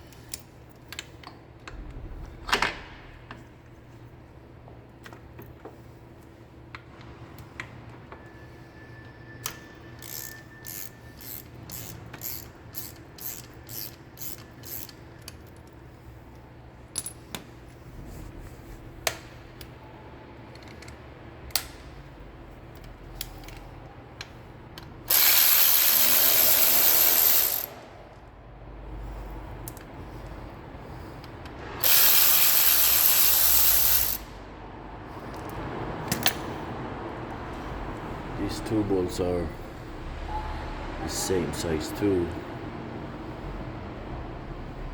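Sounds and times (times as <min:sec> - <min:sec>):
socket ratchet clicking: 0:09.5 - 0:15.8, 0:25.1 - 0:27.8, 0:31.8 - 0:34.3.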